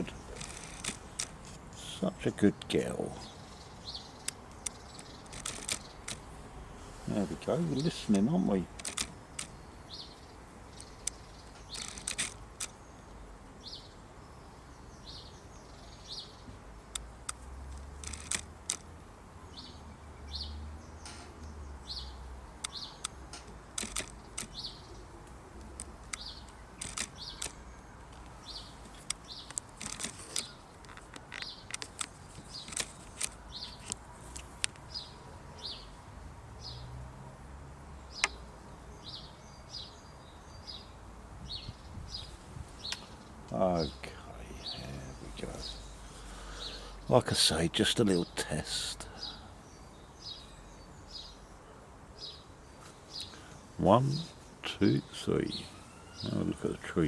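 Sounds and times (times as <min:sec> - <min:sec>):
small bird chirping: 0:03.1 - 0:06.3, 0:07.2 - 0:18.9, 0:19.5 - 0:36.0, 0:38.0 - 0:47.1, 0:49.2 - 0:57.0
sharp ticks: 0:04.2 - 0:06.3, 0:08.7 - 0:09.6, 0:10.8 - 0:12.8, 0:16.9 - 0:18.9, 0:22.6 - 0:24.6, 0:25.2 - 0:34.9
wind rumble on microphone: 0:41.3 - 0:42.9.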